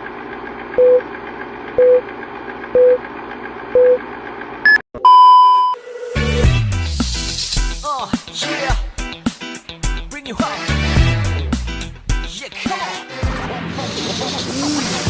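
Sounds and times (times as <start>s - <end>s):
electronic countdown beeps: 4.7s - 5.8s.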